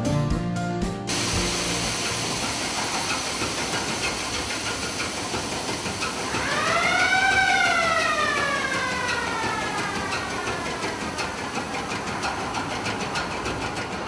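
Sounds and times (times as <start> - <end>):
background music: 0.0 - 2.7
steady hiss: 1.1 - 12.7
pitched whine: 1.1 - 13.0.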